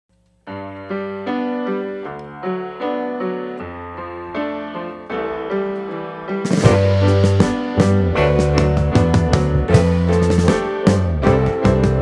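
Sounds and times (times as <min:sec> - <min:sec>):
piano chord progression: 0:00.1 - 0:12.0
bass line: 0:06.5 - 0:12.0.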